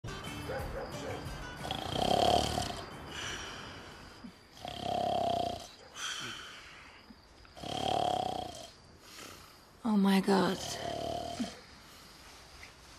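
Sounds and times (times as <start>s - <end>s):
man snoring loudly: 1.6s - 3.6s, 4.5s - 6.4s, 7.6s - 9.4s, 10.4s - 11.6s.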